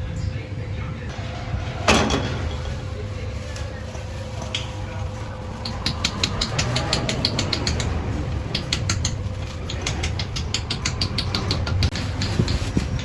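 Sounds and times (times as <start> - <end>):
machine humming: 1.0 - 13.0
rapid uneven clicking: 3.4 - 13.0.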